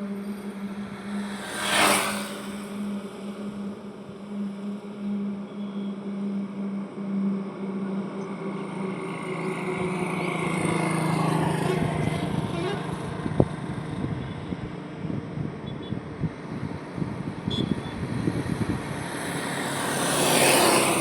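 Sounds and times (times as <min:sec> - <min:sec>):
vehicle whooshing past: 0:00.0 - 0:05.3, 0:16.2 - 0:21.0
road traffic drone: 0:00.0 - 0:21.0.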